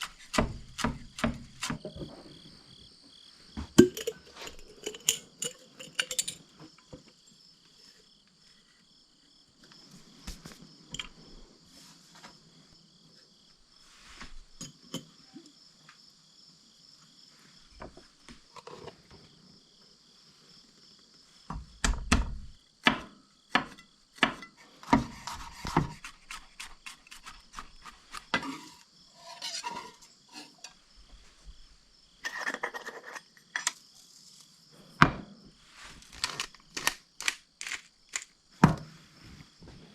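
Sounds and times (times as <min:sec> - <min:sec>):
crickets chirping: 0:00.0 - 0:39.9
utensils and dishes clinking: 0:03.8 - 0:06.5.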